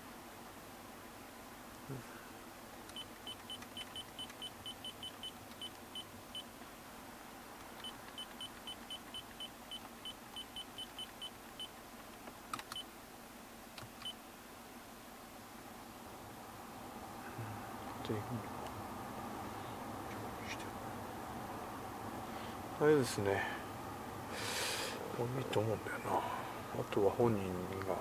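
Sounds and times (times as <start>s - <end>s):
sharp clicks: 12.0s - 12.8s.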